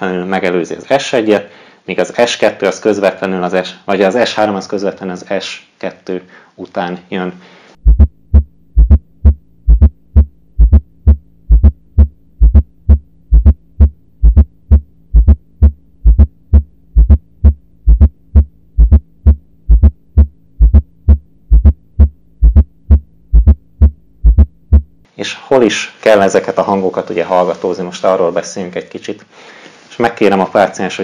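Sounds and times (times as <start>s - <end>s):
faint steady hum: 0.0s - 31.0s
heartbeat thumps: 7.8s - 25.0s.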